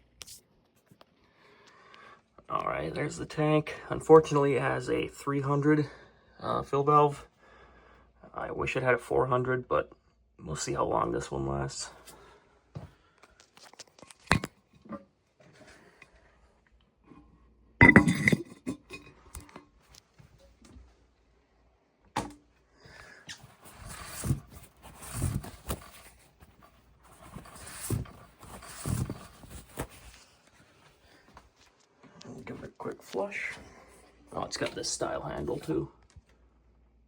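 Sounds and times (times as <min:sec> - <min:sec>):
rustling: 0:23.0 - 0:33.2.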